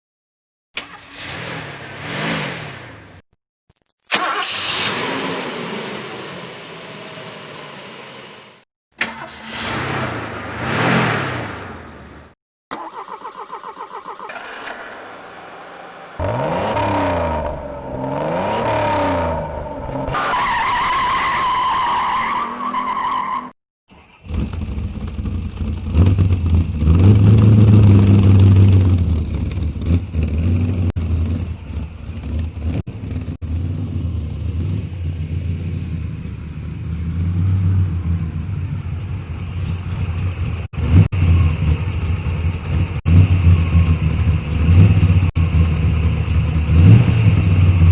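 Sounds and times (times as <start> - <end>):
starter cranking: 9.0 - 12.3
car engine revving: 9.0 - 12.4.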